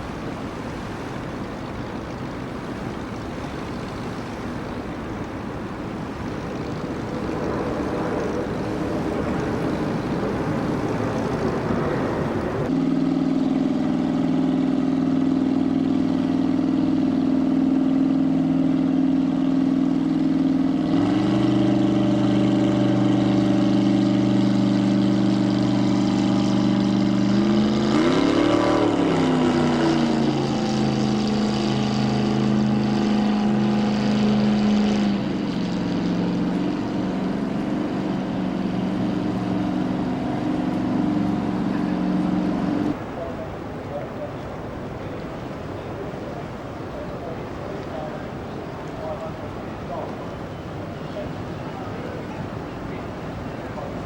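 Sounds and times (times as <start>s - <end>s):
pitched engine hum: 0.0s - 43.1s
rushing engine noise: 0.0s - 54.0s.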